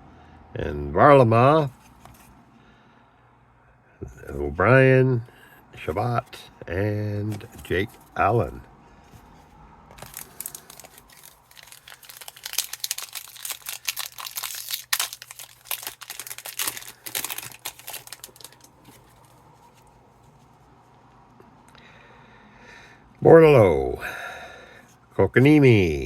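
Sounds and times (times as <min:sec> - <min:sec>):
foil wrapper crinkling and tearing: 0:10.0 - 0:19.4.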